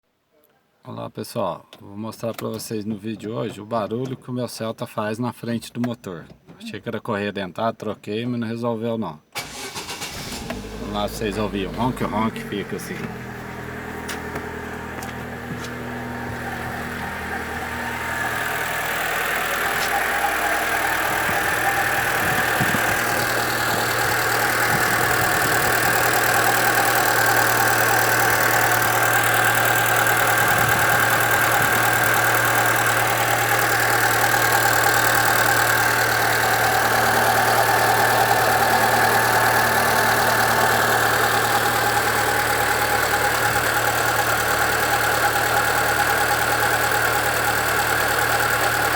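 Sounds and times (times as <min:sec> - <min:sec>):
car engine idling: 0:09.4 - 0:48.9
belt and water pump whir: 0:14.9 - 0:48.9.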